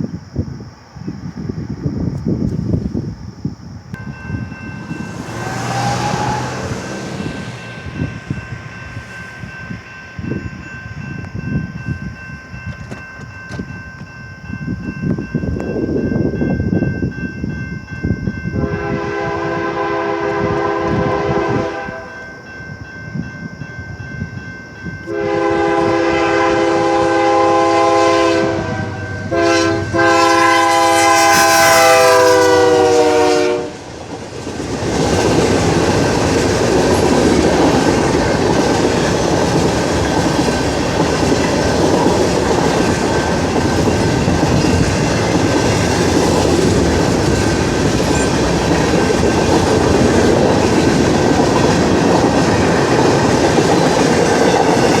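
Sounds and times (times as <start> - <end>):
locomotive air horn: 5.0 - 7.7, 18.6 - 22.3, 25.1 - 33.8
train wheels clacking over rail joints: 12.7 - 14.1.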